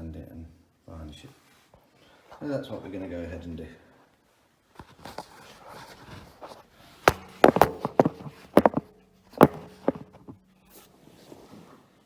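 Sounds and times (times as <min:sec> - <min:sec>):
sharp knocks and taps: 0:07.1 - 0:10.4.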